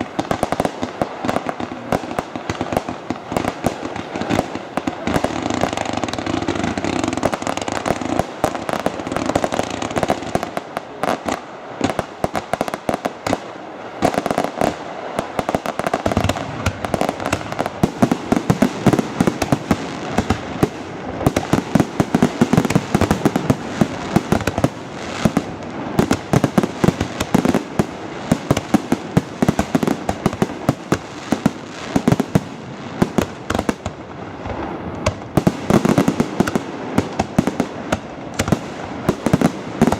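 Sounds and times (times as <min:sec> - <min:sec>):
fireworks bangs and crackling: 0:00.0 - 0:39.9.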